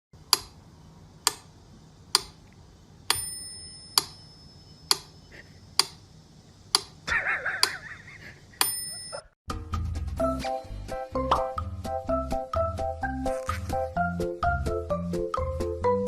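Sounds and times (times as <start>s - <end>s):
bell-like ding: 3.1s - 4.9s, 8.6s - 9.3s
sharp clock-like ticks: 5.8s - 6.0s, 6.8s - 7.0s.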